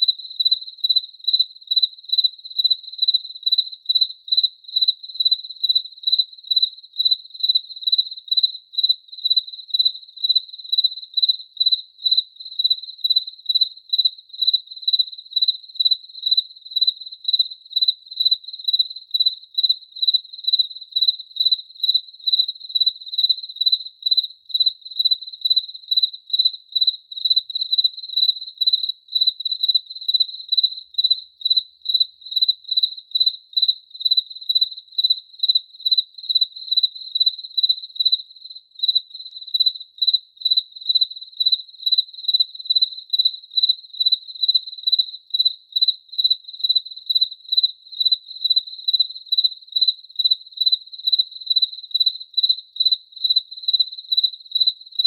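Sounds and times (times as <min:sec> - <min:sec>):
cricket chirping: 0:00.0 - 0:55.0.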